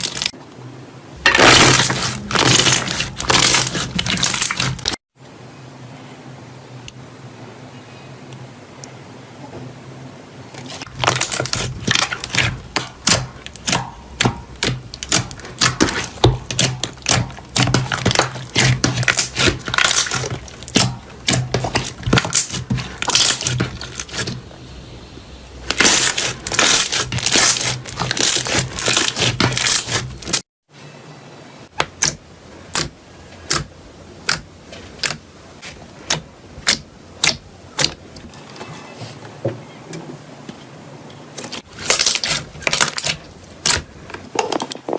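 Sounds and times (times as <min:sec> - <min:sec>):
slime crackling and popping: 0:01.4 - 0:05.0, 0:10.8 - 0:24.3, 0:25.6 - 0:30.4, 0:41.6 - 0:43.9.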